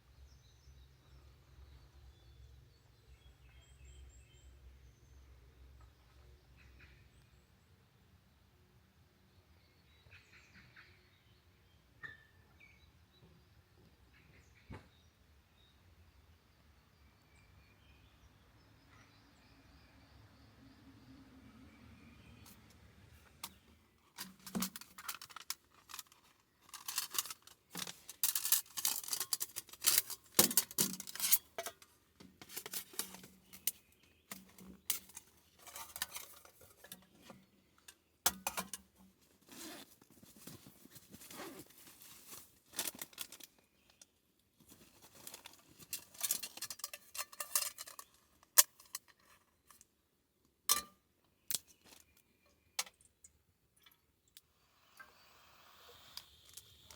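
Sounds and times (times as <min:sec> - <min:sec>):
rustling: 0:23.2 - 0:43.6, 0:44.6 - 0:49.8
small objects clicking and clinking: 0:23.4 - 0:37.1, 0:45.1 - 0:49.9.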